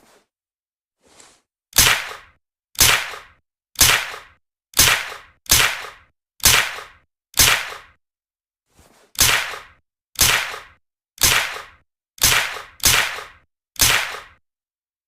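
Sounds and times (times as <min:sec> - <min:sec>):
suppressed gunshots: 0:03.8 - 0:07.9, 0:09.2 - 0:14.4.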